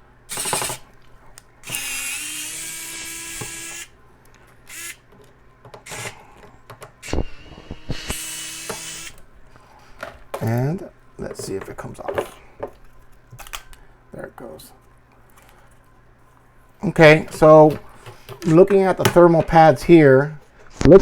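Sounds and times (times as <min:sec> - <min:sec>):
electric drill motor whining: 0:00.3 - 0:00.8, 0:01.6 - 0:03.9, 0:04.7 - 0:05.0, 0:05.8 - 0:06.2, 0:07.0 - 0:09.2.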